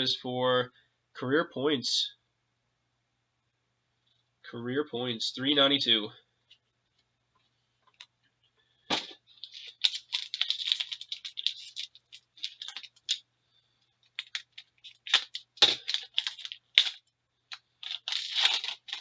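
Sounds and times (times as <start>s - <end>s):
cards being handled: 8.9s - 13.2s, 14.0s - 19.0s
foil wrapper crinkling and tearing: 9.0s - 13.2s, 14.0s - 19.0s.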